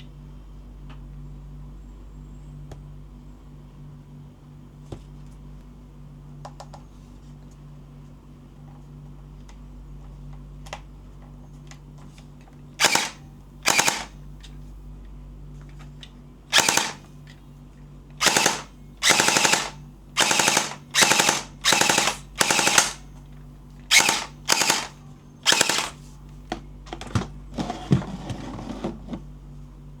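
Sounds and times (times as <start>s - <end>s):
gel blaster full-auto bursts: 12.8s - 14.2s, 16.5s - 17.1s, 18.2s - 23.0s, 23.9s - 26.0s.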